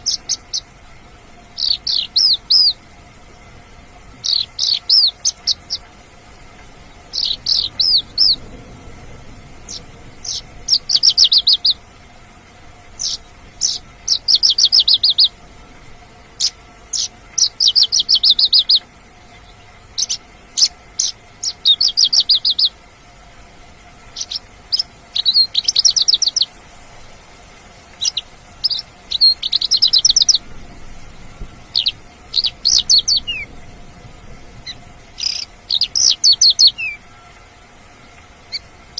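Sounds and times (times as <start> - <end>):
lark singing trilled phrases: 0.0 - 0.7, 1.6 - 2.8, 4.2 - 5.8, 7.1 - 8.4, 9.7 - 11.8, 13.0 - 15.4, 16.4 - 18.8, 20.0 - 22.8, 24.1 - 26.6, 28.0 - 30.4, 31.7 - 33.5, 35.2 - 37.3.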